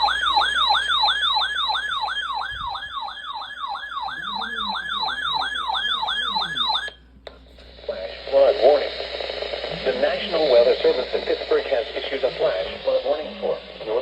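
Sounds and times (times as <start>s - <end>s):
electronic siren yelping: 0.0s - 7.0s.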